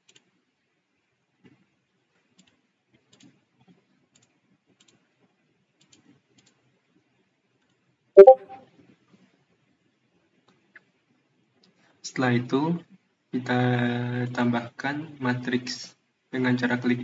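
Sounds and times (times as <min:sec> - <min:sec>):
computer mouse clicks: 0:00.1 - 0:00.3, 0:02.4 - 0:03.4, 0:04.1 - 0:05.0, 0:05.8 - 0:06.6.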